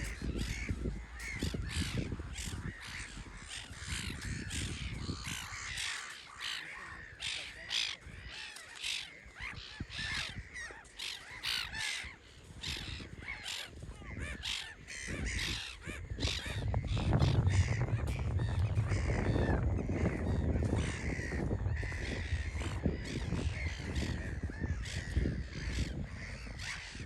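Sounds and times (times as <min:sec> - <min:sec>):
flock of birds calling: 0:00.0 - 0:27.0
low rumble: 0:16.2 - 0:24.7.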